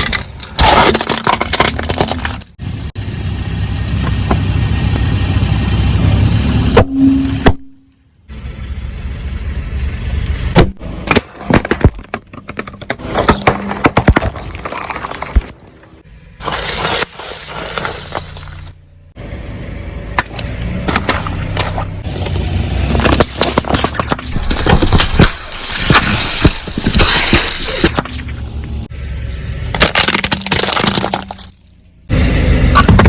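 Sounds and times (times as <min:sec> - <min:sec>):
objects crunching under tyres: 0:00.0 - 0:02.6, 0:10.5 - 0:19.0, 0:20.2 - 0:33.0
car rumble: 0:00.0 - 0:33.0.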